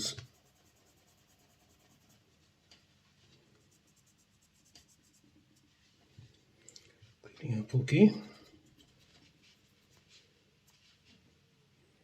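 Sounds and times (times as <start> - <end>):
faint scratching of model train wheels: 0.0 - 2.4, 3.3 - 6.0, 8.3 - 11.1.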